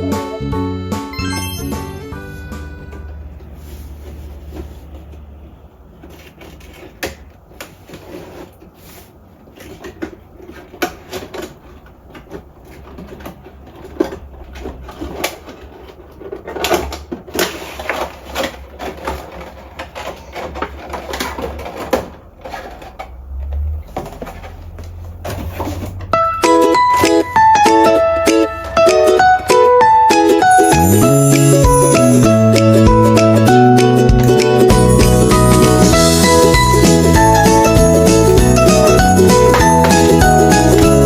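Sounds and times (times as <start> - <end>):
packaging being handled and opened: 5.8 - 26.1.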